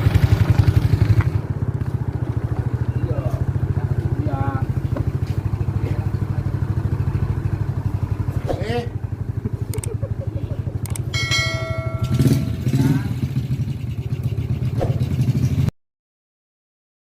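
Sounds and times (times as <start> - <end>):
vehicle engine throbbing: 0.0 - 15.7.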